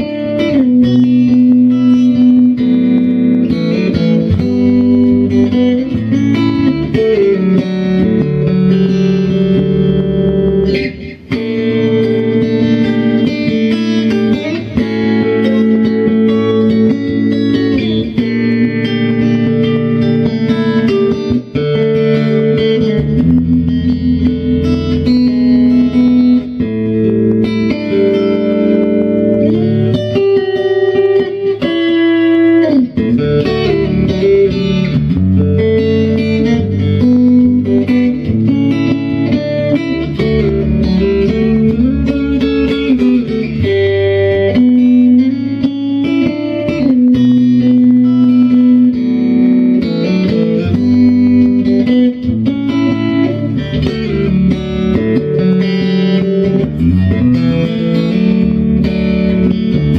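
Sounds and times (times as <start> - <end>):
bass line: 0.0 - 30.6
electric guitar melody: 0.0 - 59.9.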